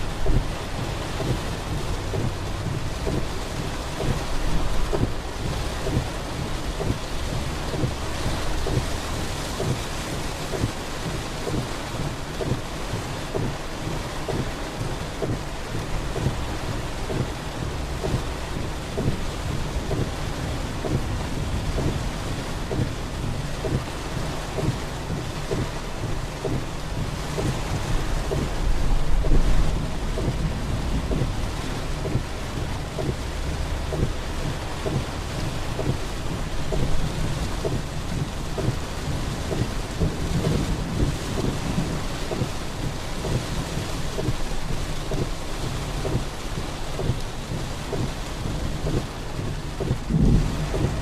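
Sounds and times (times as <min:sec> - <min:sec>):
heavy rain pouring: 0:00.0 - 0:51.0
low thuds: 0:00.0 - 0:51.0
low thunder rumble: 0:15.8 - 0:51.0.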